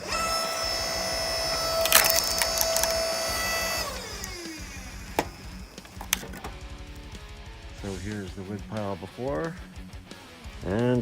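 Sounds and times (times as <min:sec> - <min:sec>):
chainsaw cutting wood: 0:00.0 - 0:07.0
sharp crack: 0:01.6 - 0:06.8.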